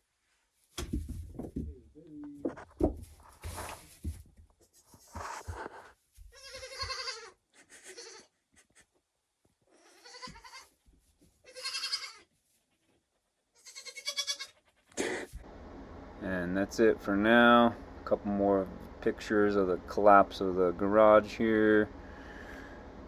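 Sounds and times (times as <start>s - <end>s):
faint rustling: 0.0s - 7.0s
goat kid bleating: 6.2s - 8.8s, 9.7s - 10.8s, 11.4s - 12.4s, 13.5s - 15.4s.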